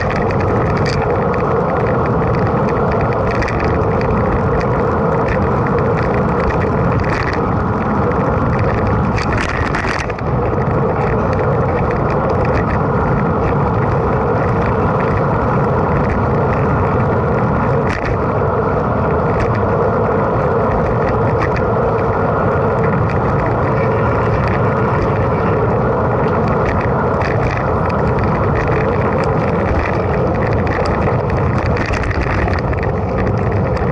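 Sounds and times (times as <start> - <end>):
bike rattles: 0.0 - 33.9
wind and tyre noise: 0.0 - 33.9.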